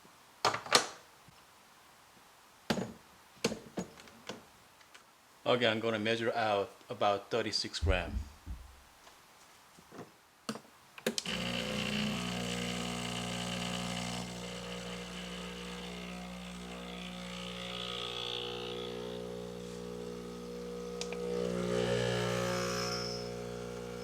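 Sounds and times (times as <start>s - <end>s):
espresso machine pump humming: 11.2s - 24.0s.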